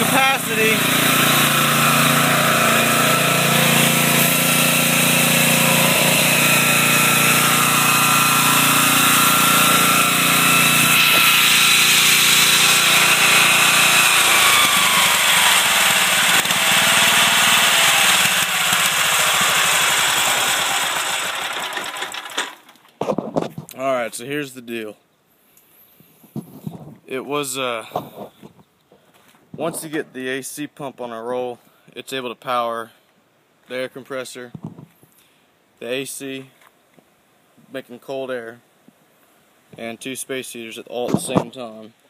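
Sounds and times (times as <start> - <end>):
air compressor: 0.0 - 22.6
generator engine under load: 0.0 - 22.8.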